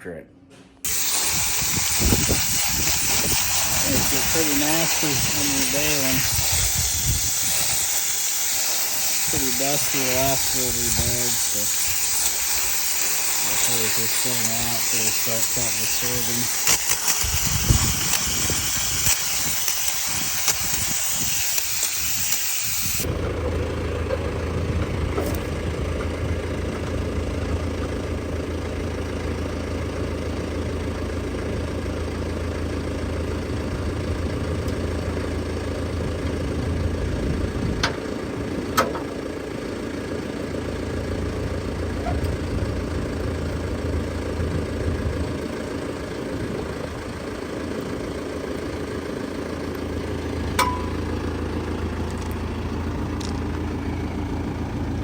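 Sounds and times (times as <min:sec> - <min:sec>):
tractor diesel engine running: 0:00.8 - 0:55.0
loud steady hiss: 0:00.9 - 0:23.1
short clicks: 0:13.5 - 0:23.0.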